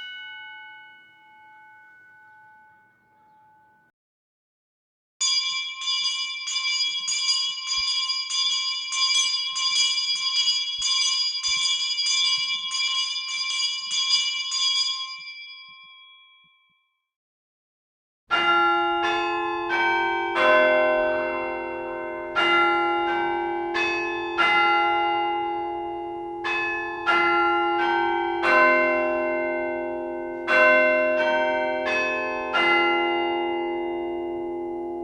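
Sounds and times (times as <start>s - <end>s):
chime of bell notes: 0.0s - 3.9s, 5.2s - 16.9s
school bell ringing: 0.0s - 3.9s, 5.2s - 16.5s, 18.3s - 35.0s.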